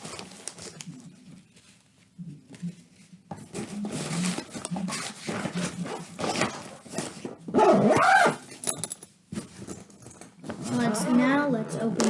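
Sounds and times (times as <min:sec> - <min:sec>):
rustling and light knocking: 0:08.8 - 0:10.7.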